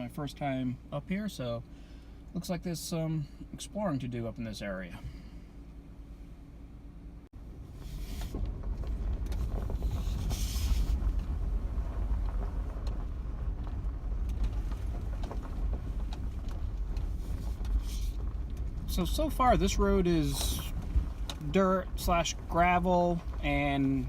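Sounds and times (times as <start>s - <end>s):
engine and road rumble: 0.0s - 24.0s
tyres crunching over gravel: 7.5s - 24.0s
small rattles and knocks: 7.6s - 24.0s.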